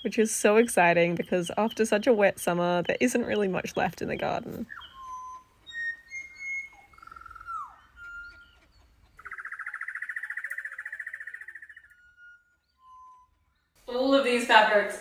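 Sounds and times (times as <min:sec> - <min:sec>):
birds whistling: 0:00.0 - 0:13.8
bird rapid trill: 0:04.6 - 0:08.5, 0:09.2 - 0:13.3.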